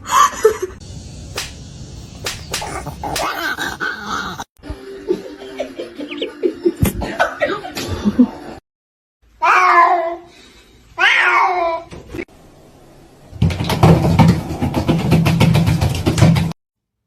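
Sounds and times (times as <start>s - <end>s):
pet animal crying: 2.0s - 4.5s.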